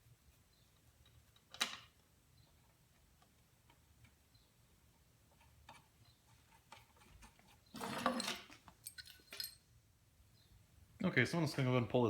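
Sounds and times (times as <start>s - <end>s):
small metal parts clicking: 7.9s - 9.6s.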